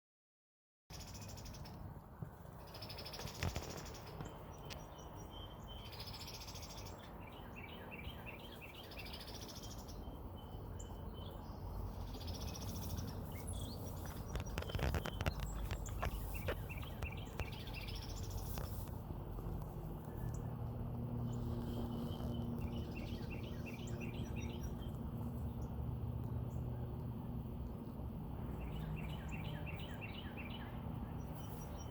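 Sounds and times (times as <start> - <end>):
bird chirps: 2.6 - 18.8, 21.2 - 25.7, 28.5 - 31.9
sharp clicks: 14.0 - 17.6.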